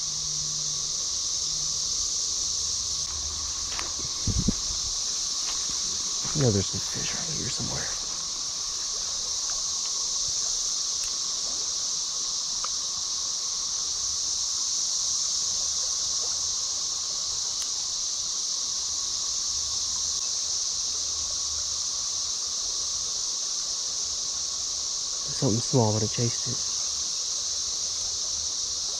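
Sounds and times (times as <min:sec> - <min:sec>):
creek water flowing: 0:00.0 - 0:17.8
cicada chorus buzzing: 0:00.0 - 0:28.9.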